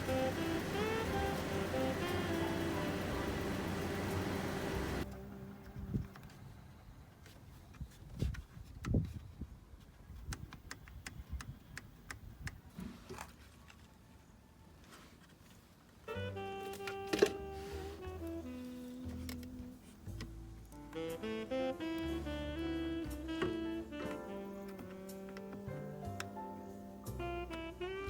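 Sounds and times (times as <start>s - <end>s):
instrumental jazz music: 0.0s - 5.2s, 16.1s - 28.0s.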